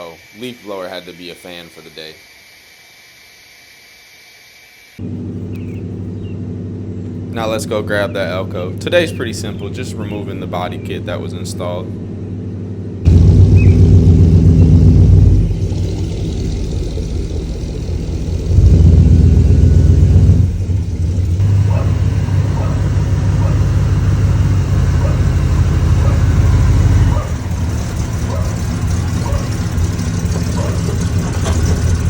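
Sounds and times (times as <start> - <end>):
car engine revving: 12.5 - 32.0.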